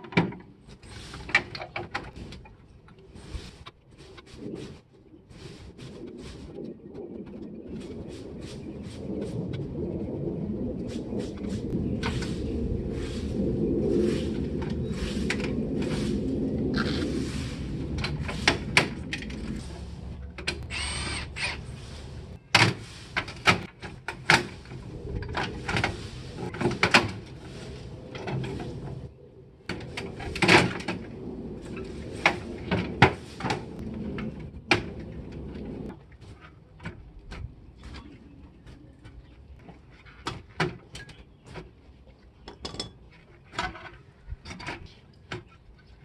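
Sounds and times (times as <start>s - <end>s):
low steady hum: 7.7s - 23.7s.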